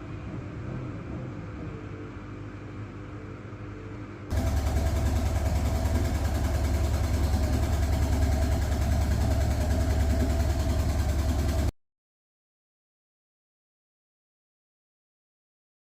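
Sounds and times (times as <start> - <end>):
machine humming: 0.0 - 11.7.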